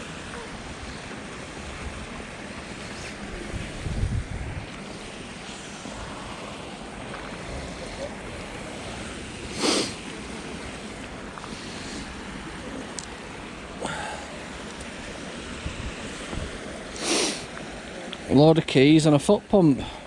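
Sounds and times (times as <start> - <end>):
steady outdoor noise: 0.0 - 20.0
wind buffeting microphone: 1.6 - 6.2, 15.0 - 16.8.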